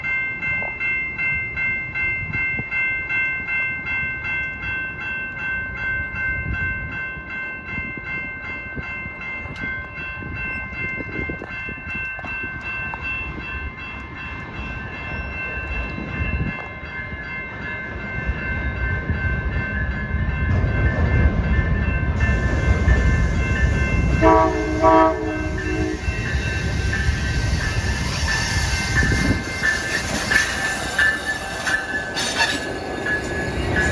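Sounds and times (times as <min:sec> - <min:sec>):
train rumble: 0:08.8 - 0:33.9
bell ringing: 0:21.9 - 0:33.9
train horn blasts: 0:22.0 - 0:31.3.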